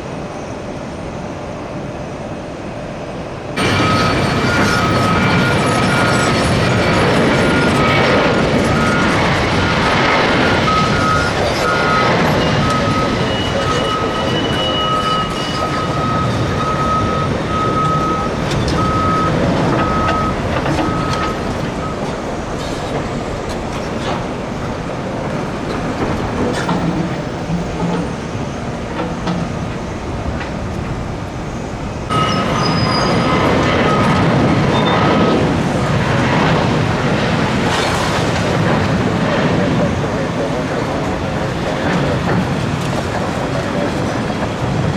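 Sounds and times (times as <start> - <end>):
bulldozer engine and tracks: 3.5 - 44.9
reversing alarm beeping: 3.6 - 29.4, 32.1 - 35.4.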